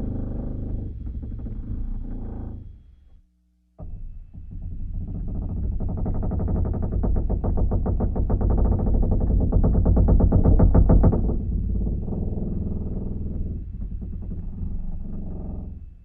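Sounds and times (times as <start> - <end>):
ship deck creaking: 3.9 - 16.0.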